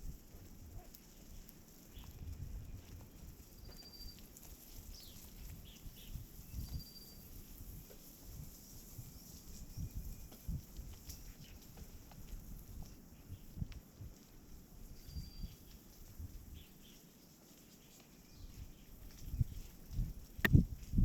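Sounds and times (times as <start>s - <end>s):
faint bird chirps and whistles: 3.6s - 4.3s, 4.9s - 7.6s, 9.2s - 10.7s, 15.0s - 15.8s.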